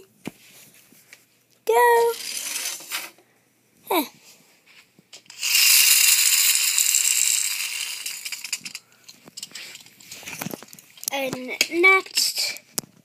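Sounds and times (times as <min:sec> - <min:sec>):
toy spring motor whirring: 0:01.8 - 0:03.2, 0:05.2 - 0:08.8.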